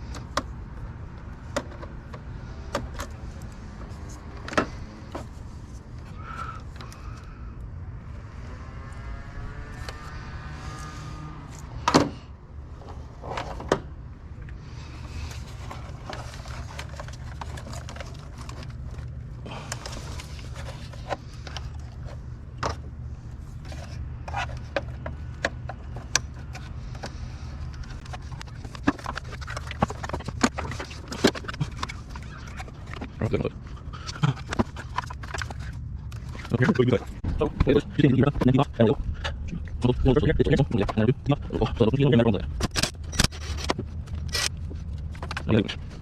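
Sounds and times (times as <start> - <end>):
clicks and knocks of car parts: 0.0 - 5.4, 11.8 - 13.9, 23.6 - 33.2
steady low hum: 0.0 - 46.0.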